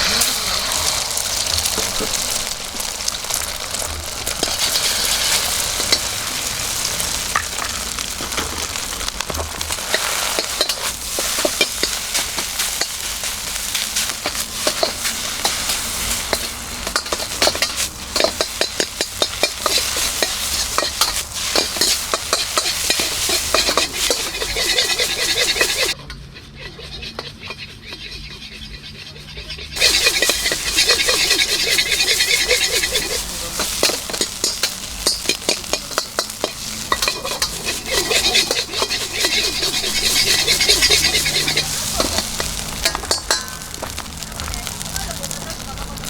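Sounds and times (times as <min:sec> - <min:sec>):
food sizzling in a wok: 0:00.0 - 0:26.0, 0:29.8 - 0:46.0
metal utensil scraping a pan: 0:00.0 - 0:26.0, 0:26.6 - 0:46.0.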